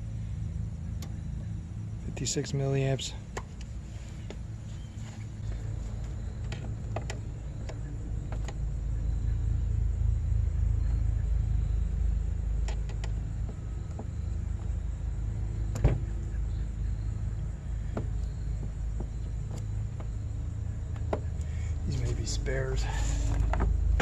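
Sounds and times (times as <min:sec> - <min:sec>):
steady low rumble: 0:00.0 - 0:24.0.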